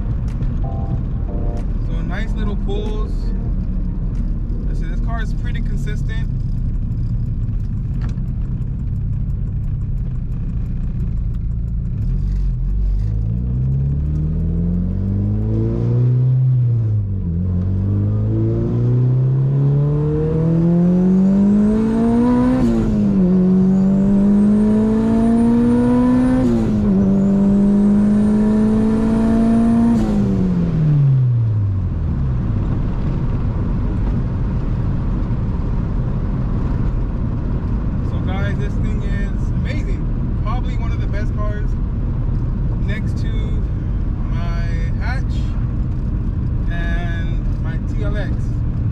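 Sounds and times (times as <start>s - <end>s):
car engine accelerating: 0.0s - 48.9s.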